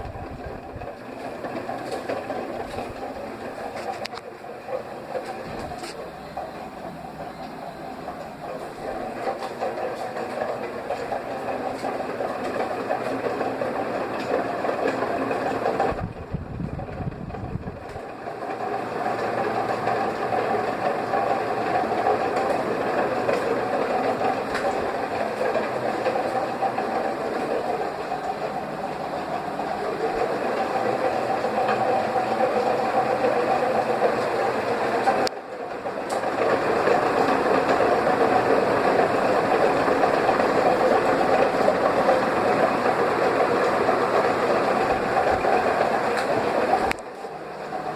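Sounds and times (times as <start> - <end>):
ceiling fan motor humming: 0.0 - 47.9.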